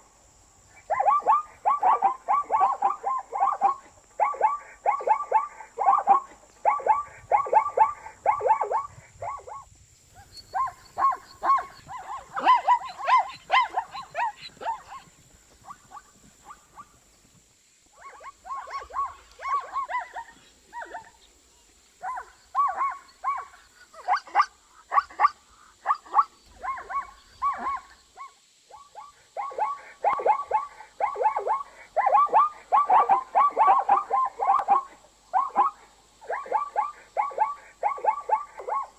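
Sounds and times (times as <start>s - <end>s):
zebra barking calls: 10.2s - 16.9s.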